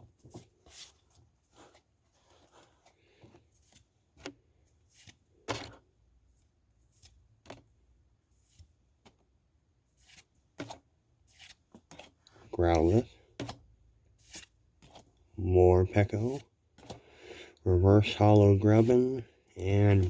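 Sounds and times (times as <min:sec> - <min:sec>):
trading cards rustling and sliding: 0:00.2 - 0:05.8, 0:09.9 - 0:13.6, 0:14.2 - 0:15.1, 0:15.9 - 0:17.1, 0:17.9 - 0:20.0.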